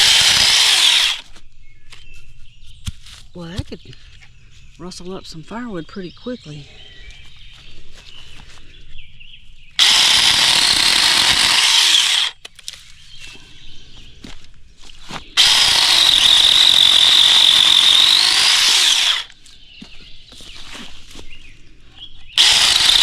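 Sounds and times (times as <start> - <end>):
electric chainsaw whine: 0.0 - 1.2, 9.8 - 12.4, 15.4 - 19.3, 22.4 - 23.0.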